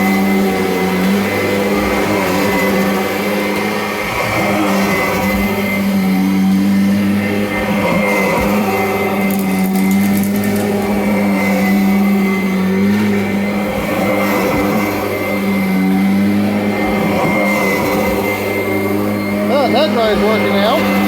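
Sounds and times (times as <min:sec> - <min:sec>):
upright vacuum running: 0:00.0 - 0:21.0.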